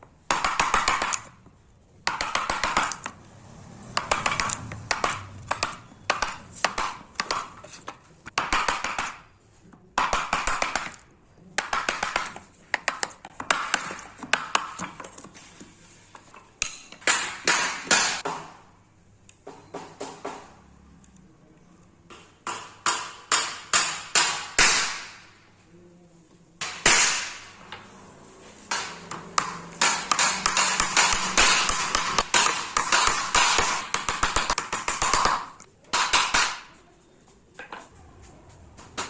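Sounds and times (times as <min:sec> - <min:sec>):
hammer strikes: 0:00.2 - 0:01.4, 0:02.0 - 0:03.2, 0:03.9 - 0:09.4, 0:10.0 - 0:11.0, 0:11.6 - 0:15.3, 0:16.6 - 0:18.7, 0:22.1 - 0:25.4, 0:26.6 - 0:36.8.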